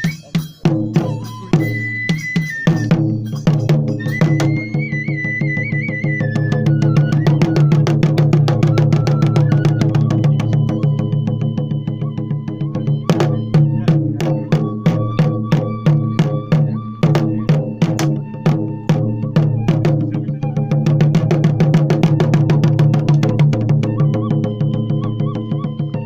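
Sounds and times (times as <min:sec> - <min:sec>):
drums beating: 0:00.0 - 0:26.0
high held melody: 0:00.0 - 0:26.0.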